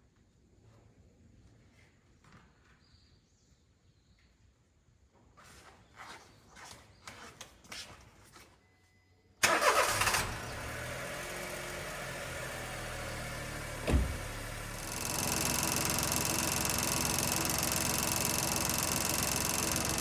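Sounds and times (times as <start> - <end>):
car engine starting and idling: 9.4 - 20.0
short low thump: 13.8 - 14.6.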